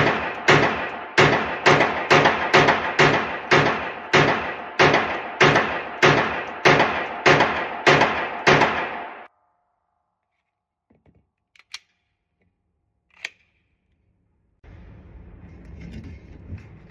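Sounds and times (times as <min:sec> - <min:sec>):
pistol shots indoors: 0:00.0 - 0:10.0.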